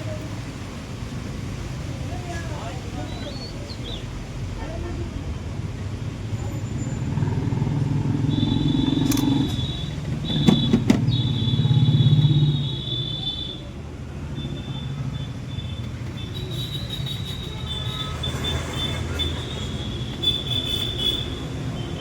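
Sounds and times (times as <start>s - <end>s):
small car engine revving: 6.7s - 12.7s
sharp clicks: 8.9s - 9.8s.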